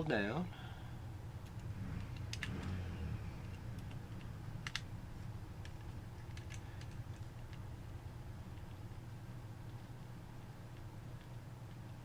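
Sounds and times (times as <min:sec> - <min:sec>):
low steady hum: 0:00.0 - 0:12.0
light clicks of plastic parts: 0:01.4 - 0:04.9, 0:05.6 - 0:07.7.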